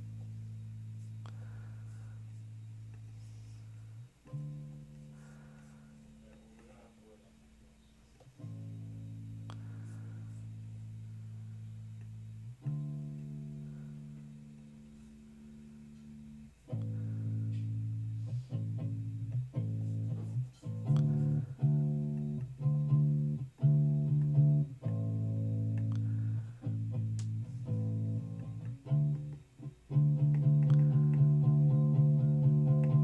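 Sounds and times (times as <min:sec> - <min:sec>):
plucked string instrument notes: 0:04.2 - 0:05.2, 0:15.9 - 0:33.0.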